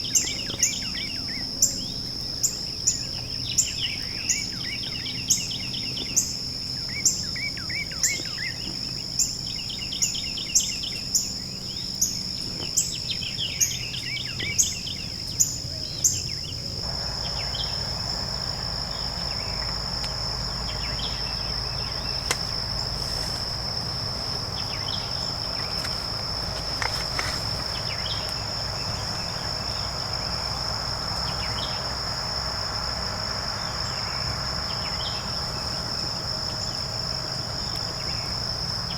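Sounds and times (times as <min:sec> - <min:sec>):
insects droning: 0:00.0 - 0:38.9
songbirds singing trills: 0:00.0 - 0:38.9
background hiss: 0:16.8 - 0:38.9.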